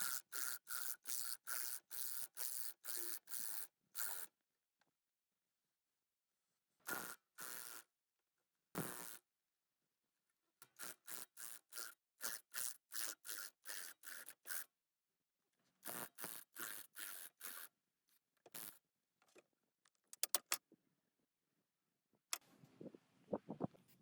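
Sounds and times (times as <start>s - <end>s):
sharp clicks: 20.2s - 20.6s.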